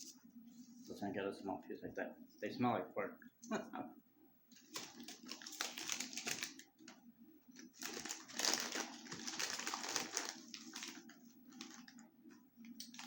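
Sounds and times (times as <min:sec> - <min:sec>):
crunching fried pork rind: 0:04.6 - 0:06.7.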